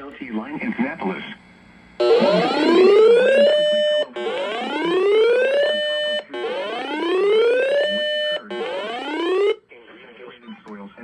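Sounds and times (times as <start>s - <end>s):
electronic alarm whoop: 2.0s - 9.6s.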